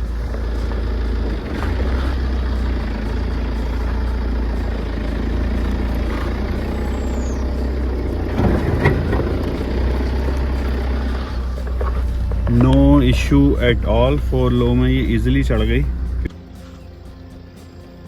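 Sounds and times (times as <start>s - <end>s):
diesel engine pulling: 0.0s - 18.0s.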